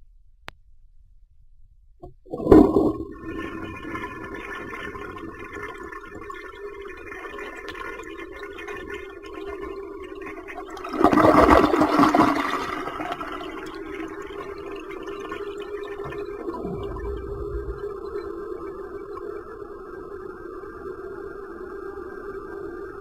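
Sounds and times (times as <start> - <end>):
toilet flushing: 2.3 - 18.8.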